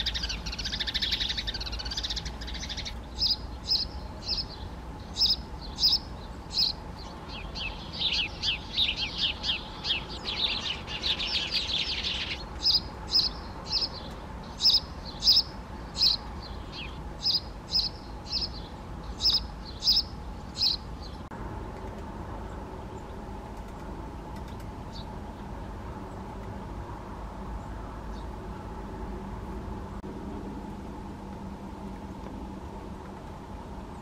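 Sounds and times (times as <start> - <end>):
woodpecker chattering calls: 0.0 - 20.8.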